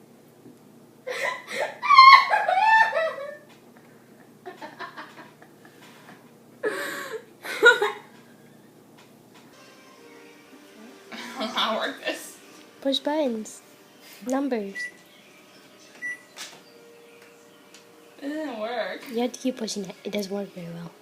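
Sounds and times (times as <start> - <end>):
people laughing: 1.1 - 6.3, 7.4 - 8.7.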